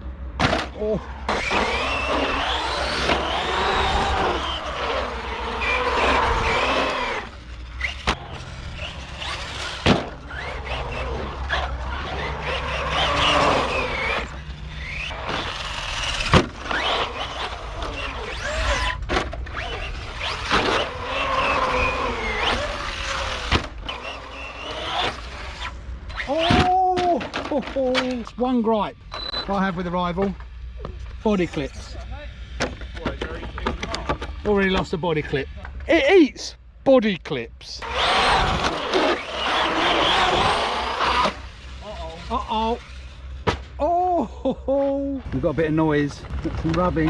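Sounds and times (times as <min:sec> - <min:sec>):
electric motor whining: 0:01.2 - 0:26.5, 0:37.8 - 0:43.4.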